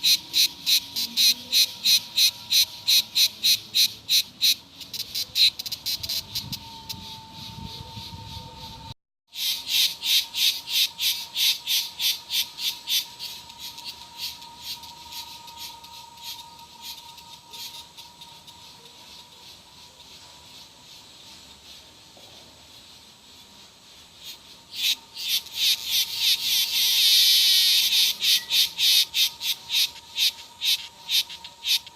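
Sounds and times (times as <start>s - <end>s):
cicada pulsing call: 0.0s - 31.9s.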